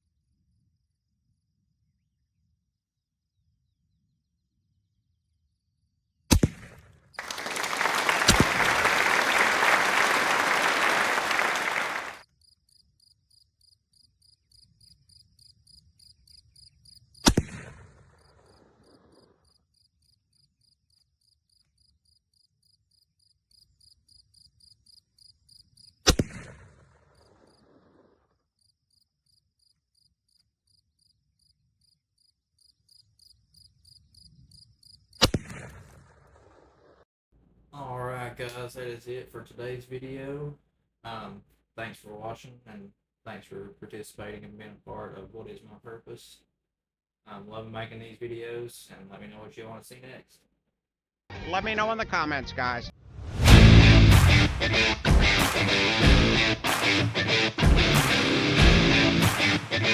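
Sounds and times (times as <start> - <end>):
rifle shots with echo: 6.3 - 6.8
insects chirping: 7.2 - 17.2, 18.2 - 26.0, 28.4 - 35.2
loud rushing noise: 53.2 - 58.3.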